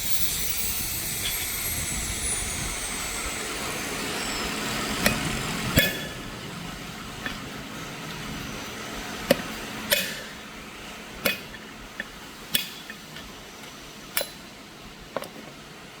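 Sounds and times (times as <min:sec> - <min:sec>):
steady background noise: 0:00.0 - 0:16.0.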